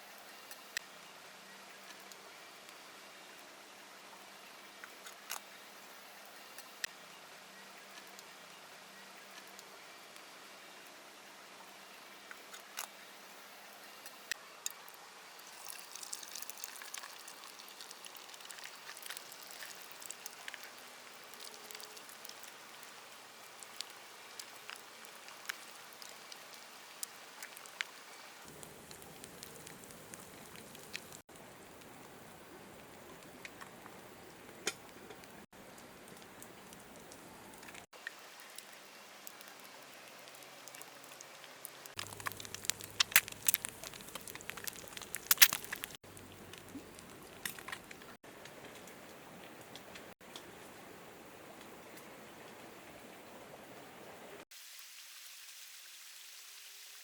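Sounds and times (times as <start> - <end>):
rain falling steadily: 0.0 - 57.0
raindrops pattering: 15.3 - 50.1.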